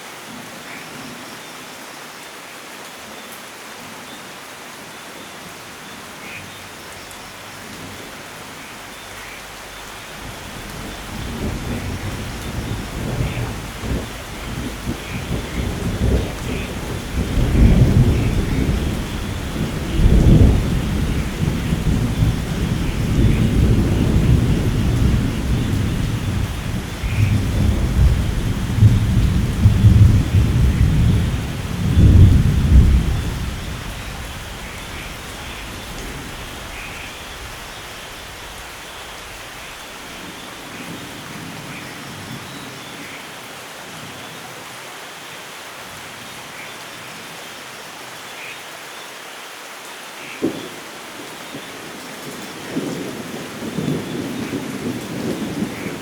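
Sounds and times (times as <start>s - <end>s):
heavy rain: 0.0s - 56.0s
rolling thunder: 10.1s - 41.2s.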